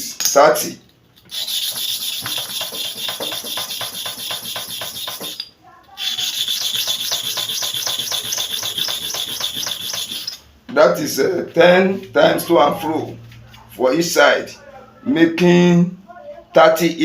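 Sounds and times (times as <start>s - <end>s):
metal blade scraping on sharpening surface: 1.3s - 10.4s.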